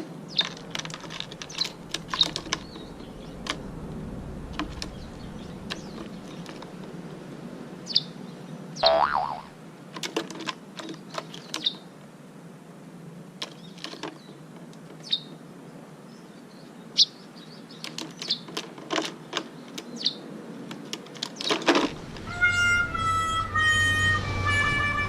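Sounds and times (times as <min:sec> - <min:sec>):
bird chirps: 0:07.9 - 0:08.2, 0:08.8 - 0:09.5.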